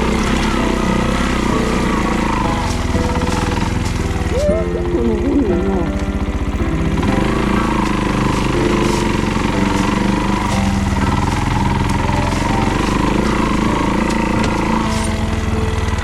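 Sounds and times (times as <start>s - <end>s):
vehicle engine running: 0.0s - 16.0s.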